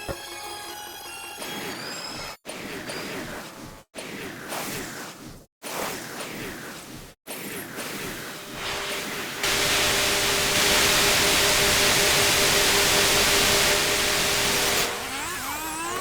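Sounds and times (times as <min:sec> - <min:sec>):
laptop cooling fans rushing: 0:08.4 - 0:15.8.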